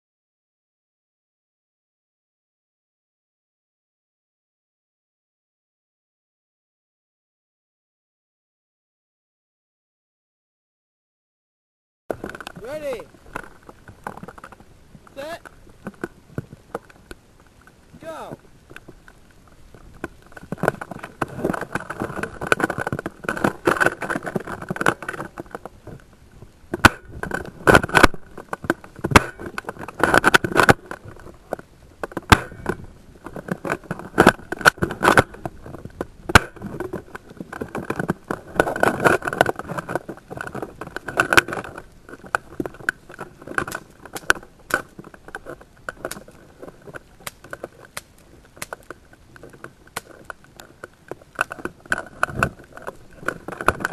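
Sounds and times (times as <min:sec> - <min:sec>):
rustling and rattling gear: 0:12.1 - 0:53.9.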